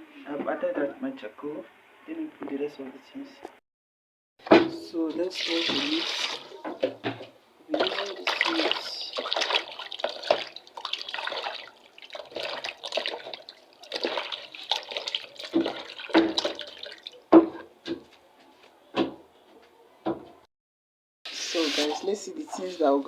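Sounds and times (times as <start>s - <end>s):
liquid pouring and splashing: 5.0s - 17.5s.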